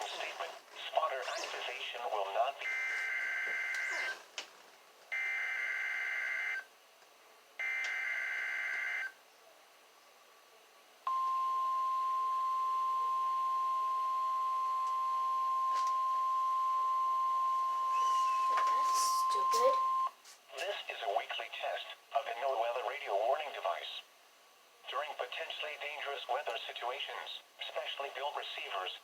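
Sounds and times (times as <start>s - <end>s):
single-pitch warning alarm tone: 11.1s - 20.1s.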